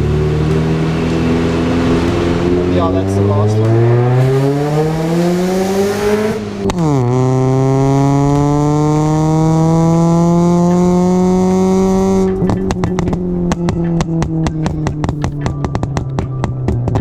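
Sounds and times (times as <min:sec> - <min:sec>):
car engine accelerating: 0:00.0 - 0:17.0
music beat: 0:00.0 - 0:17.0.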